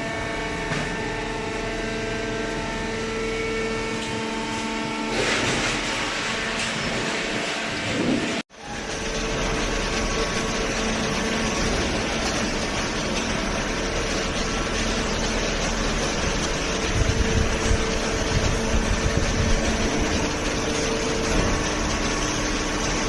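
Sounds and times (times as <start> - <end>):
hydraulic press humming: 0.0 - 23.0
motor and pump drone: 0.0 - 23.0
low rumbling: 6.3 - 23.0.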